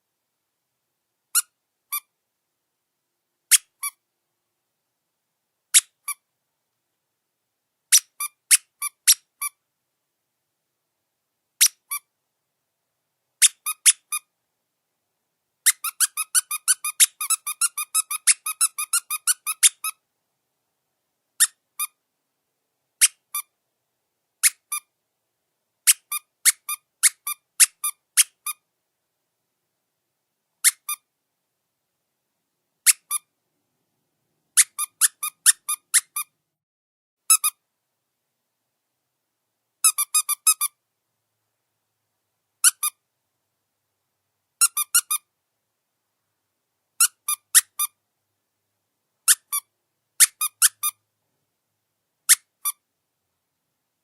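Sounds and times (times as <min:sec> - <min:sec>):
squeaky dog toy squeaks: 0:01.4 - 0:02.1, 0:03.5 - 0:04.0, 0:05.7 - 0:06.2, 0:07.9 - 0:09.6, 0:11.6 - 0:12.1, 0:13.4 - 0:14.3, 0:15.6 - 0:20.0, 0:21.4 - 0:22.0, 0:23.0 - 0:23.5, 0:24.4 - 0:24.9, 0:25.8 - 0:28.6, 0:30.6 - 0:31.0, 0:32.8 - 0:33.3, 0:34.6 - 0:36.3, 0:37.3 - 0:37.6, 0:39.8 - 0:40.8, 0:42.6 - 0:43.0, 0:44.6 - 0:45.2, 0:47.0 - 0:48.0, 0:49.3 - 0:51.0, 0:52.3 - 0:52.8.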